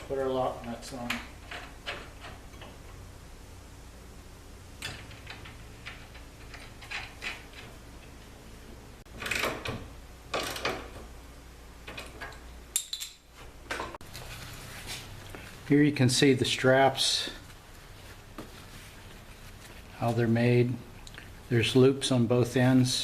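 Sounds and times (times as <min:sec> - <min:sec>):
low steady hum: 0:00.0 - 0:23.0
metal hardware clicks and scrapes: 0:04.8 - 0:08.2, 0:11.9 - 0:14.0
scraping and rustling: 0:13.3 - 0:15.8, 0:17.3 - 0:20.3.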